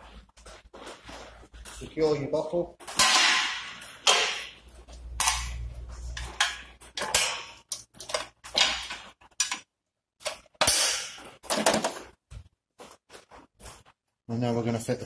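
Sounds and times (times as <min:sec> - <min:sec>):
metal clicks and knocks: 0:05.1 - 0:12.2.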